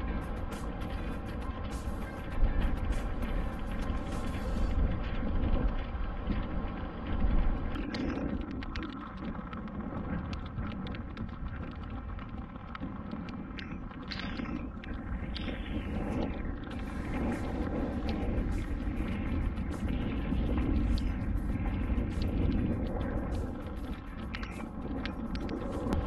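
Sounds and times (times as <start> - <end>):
wind rumbling on microphone: 0.0 - 26.0.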